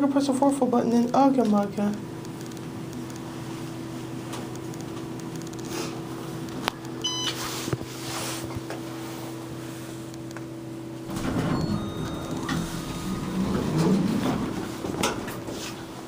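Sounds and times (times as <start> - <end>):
steady low hum: 0.0 - 16.0
elevator ding: 7.0 - 7.4, 11.0 - 15.5
elevator doors sliding open: 11.0 - 16.0
rumbling and rattling: 11.1 - 16.0.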